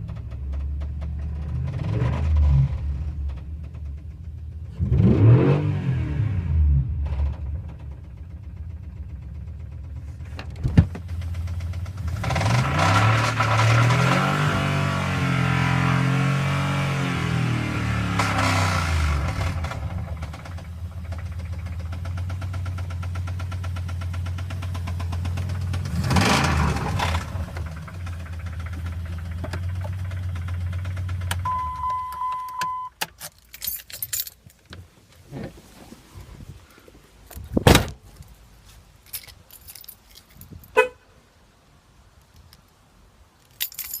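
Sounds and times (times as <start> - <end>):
engine idling with lifter tick: 0.0 - 5.1, 7.0 - 12.6, 19.1 - 33.1
electronic beep: 31.4 - 32.9.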